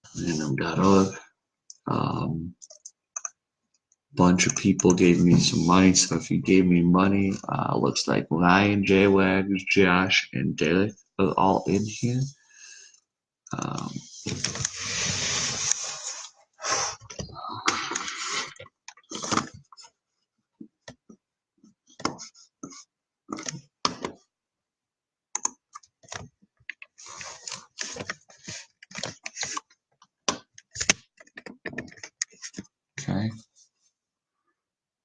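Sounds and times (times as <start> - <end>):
rustling scrape: 14.0 - 17.0
typing on computer keyboard: 25.3 - 26.9.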